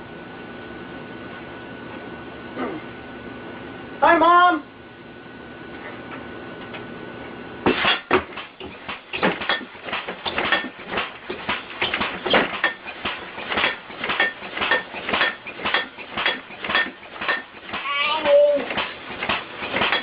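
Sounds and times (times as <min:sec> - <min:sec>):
fast metallic clanks: 0:07.7 - 0:18.0, 0:18.7 - 0:20.0.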